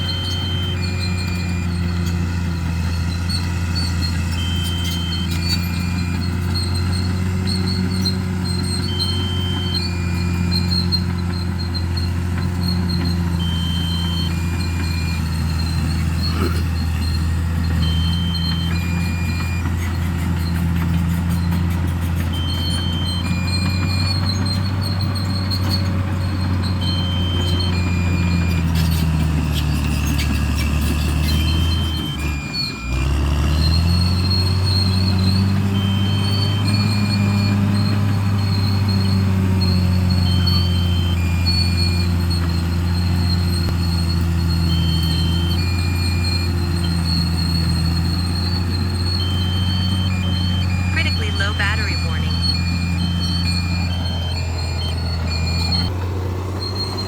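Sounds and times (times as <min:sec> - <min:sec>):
bulldozer diesel engine running: 0:00.0 - 0:57.0
short high electronic beeps: 0:49.6 - 0:52.8.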